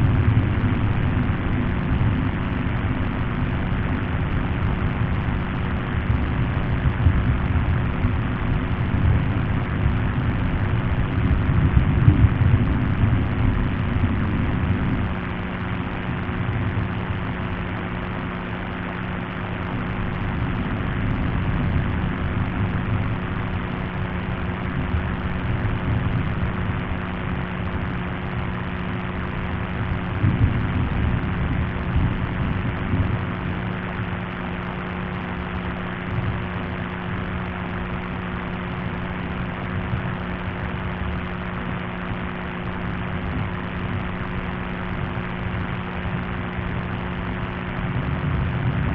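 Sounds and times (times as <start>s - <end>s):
dense rumbling noise: 0.0s - 48.9s
steady low hum: 0.0s - 48.9s.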